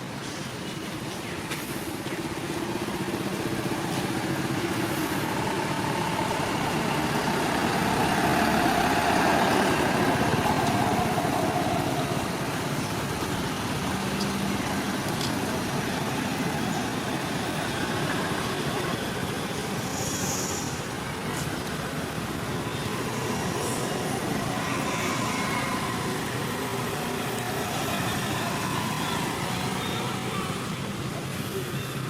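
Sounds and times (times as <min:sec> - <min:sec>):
vehicle engine running: 0:01.5 - 0:24.4.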